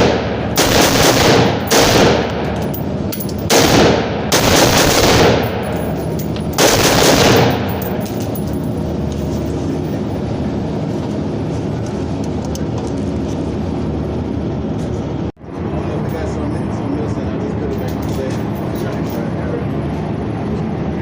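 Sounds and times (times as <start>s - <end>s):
rapid gunshots: 0.0s - 2.5s, 3.4s - 5.8s, 6.6s - 8.0s
steady background noise: 0.0s - 21.0s.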